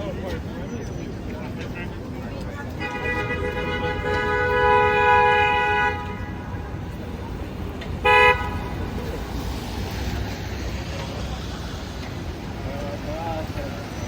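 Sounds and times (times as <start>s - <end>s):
city traffic rumble: 0.0s - 14.0s
car horn honking: 2.8s - 6.5s, 8.0s - 8.8s.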